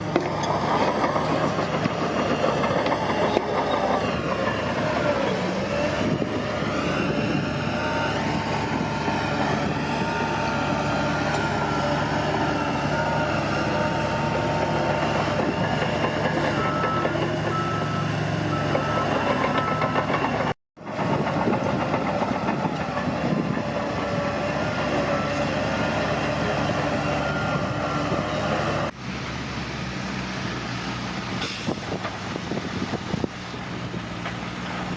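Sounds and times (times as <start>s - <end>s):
bulldozer diesel engine running: 0.0s - 34.9s
bulldozer tracks working: 0.0s - 34.9s
reversing alarm beeping: 16.5s - 20.5s, 27.0s - 28.4s.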